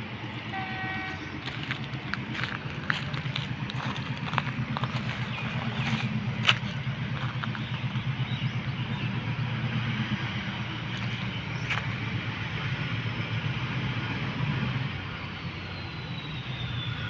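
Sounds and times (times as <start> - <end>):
diesel locomotive engine chugging: 0.0 - 17.0.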